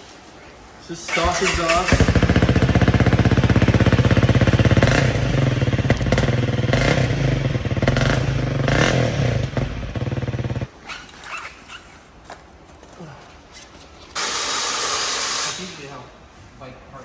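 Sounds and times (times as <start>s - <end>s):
motorcycle engine idling: 1.1s - 10.7s.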